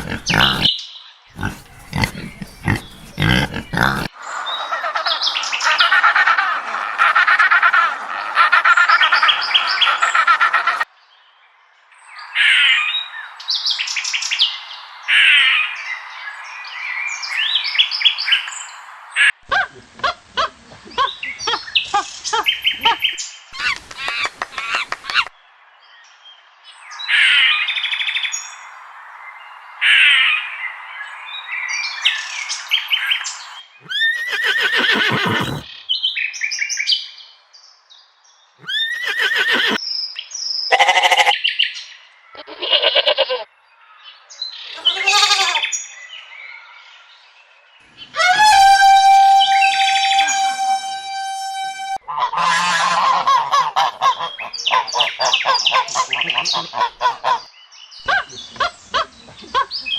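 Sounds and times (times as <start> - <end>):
deep bird call: 0.0 - 0.8, 1.4 - 4.1, 38.6 - 39.8, 48.0 - 58.7
birds squawking and chirping: 0.0 - 10.8, 32.8 - 35.8, 38.6 - 39.8, 44.6 - 45.8, 47.8 - 59.9.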